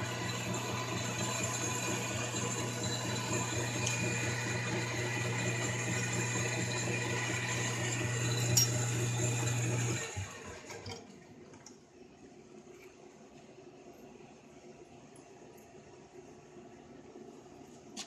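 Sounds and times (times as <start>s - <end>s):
metal lathe running: 0.0s - 10.8s.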